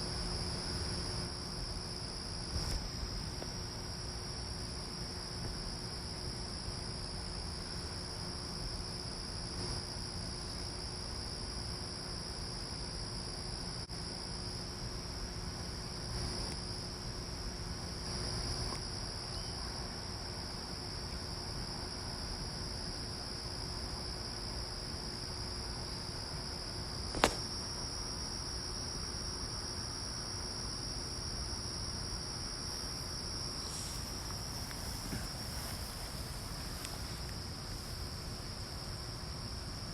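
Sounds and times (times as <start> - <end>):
insects chirping: 0.0 - 39.9
sharp click: 27.1 - 27.4.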